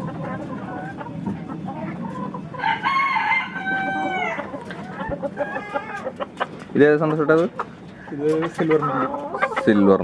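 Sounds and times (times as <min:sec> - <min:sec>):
chickens clucking: 0:00.0 - 0:10.0
rooster crowing: 0:02.6 - 0:04.5.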